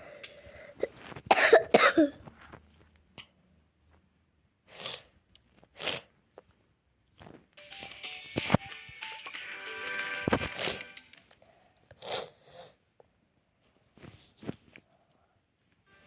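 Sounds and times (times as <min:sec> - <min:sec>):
soft breathy sounds: 0:00.0 - 0:01.2
person coughing: 0:00.8 - 0:02.3.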